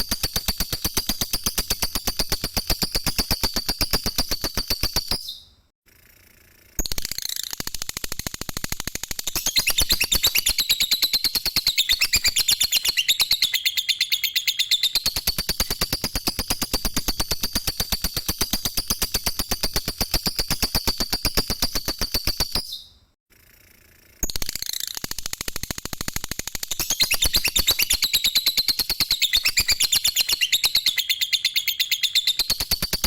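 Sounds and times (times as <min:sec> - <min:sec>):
lovebird chattering trill: 0:09.3 - 0:22.8, 0:26.8 - 0:33.0.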